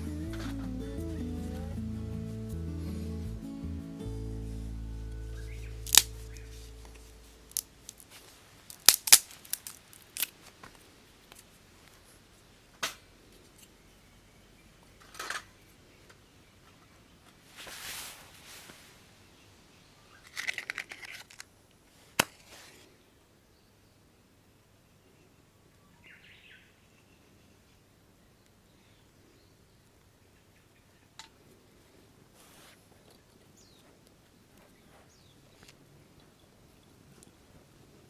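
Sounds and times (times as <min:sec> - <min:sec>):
background music: 0:00.0 - 0:07.6
dry wood snapping: 0:05.8 - 0:06.4, 0:07.5 - 0:08.1, 0:08.7 - 0:10.4.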